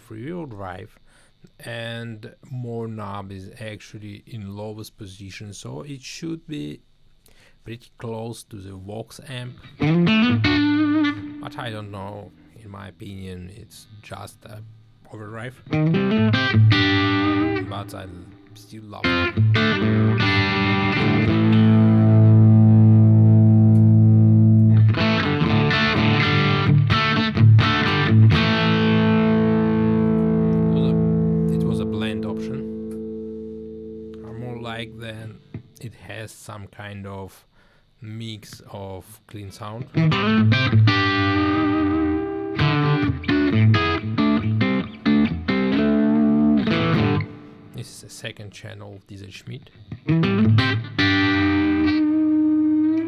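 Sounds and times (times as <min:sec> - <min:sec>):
overdriven electric guitar: 0:09.6 - 0:11.7, 0:15.7 - 0:35.8, 0:39.9 - 0:47.8, 0:49.8 - 0:53.0.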